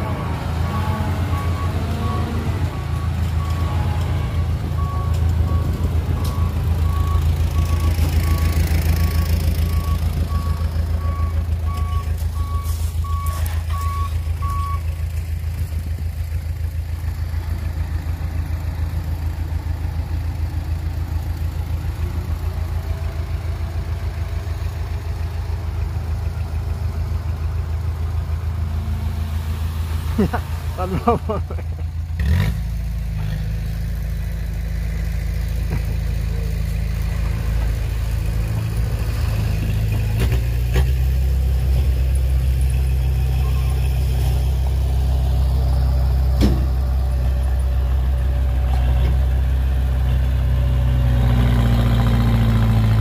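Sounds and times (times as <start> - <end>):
diesel engine droning: 0.0 - 53.0.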